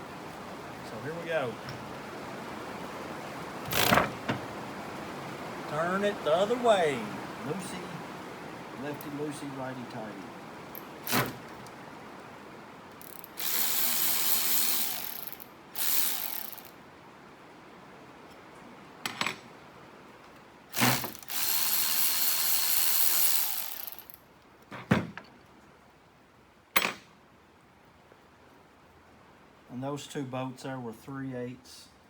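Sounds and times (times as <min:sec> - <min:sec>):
socket ratchet clicking: 0:13.0 - 0:16.7, 0:20.8 - 0:24.2.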